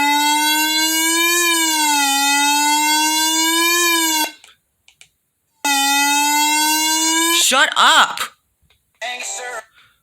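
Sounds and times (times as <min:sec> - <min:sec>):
electronic alert siren wailing: 0:00.0 - 0:04.4, 0:05.6 - 0:07.6.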